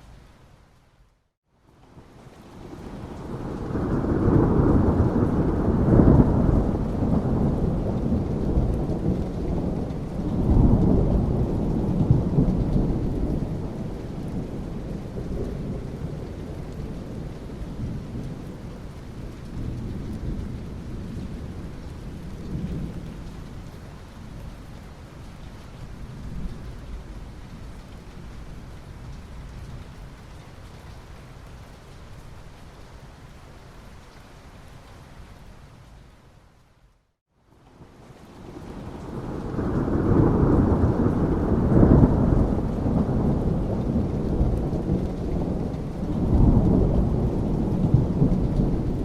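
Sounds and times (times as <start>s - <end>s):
steady rain hiss: 0.0s - 49.0s
thunder rumbling: 3.0s - 18.9s, 38.4s - 49.0s.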